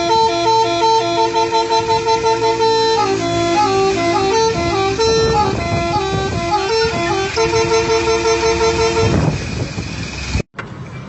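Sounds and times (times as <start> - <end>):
multi-tone horn melody: 0.0 - 9.5
low rumble: 1.6 - 10.4.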